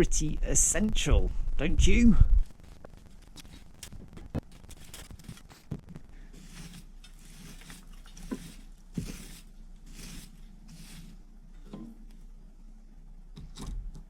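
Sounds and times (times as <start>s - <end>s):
scraping: 2.4s - 12.0s.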